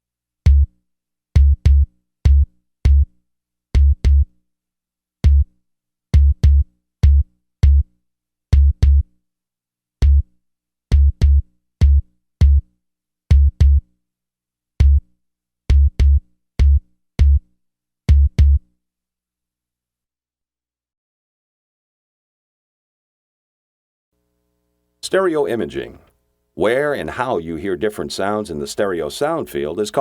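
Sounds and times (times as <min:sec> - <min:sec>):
drum machine kick hits: 0:00.5 - 0:00.7, 0:01.4 - 0:03.1, 0:03.8 - 0:04.3, 0:05.2 - 0:05.5, 0:06.2 - 0:07.8, 0:08.6 - 0:09.0, 0:10.0 - 0:10.2, 0:10.9 - 0:12.6, 0:13.3 - 0:13.8, 0:14.8 - 0:15.0, 0:15.7 - 0:17.4, 0:18.1 - 0:18.6.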